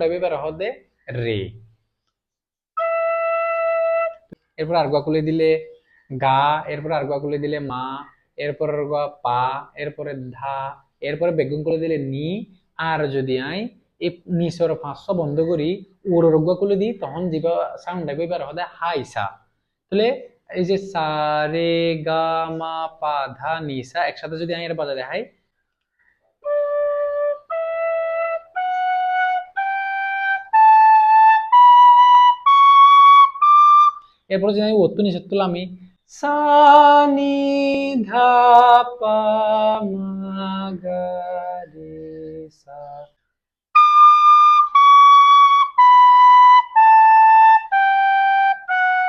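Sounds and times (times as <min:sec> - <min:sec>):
penny whistle playing a scale: 0:02.8 - 0:04.3, 0:26.4 - 0:34.2, 0:43.8 - 0:49.0.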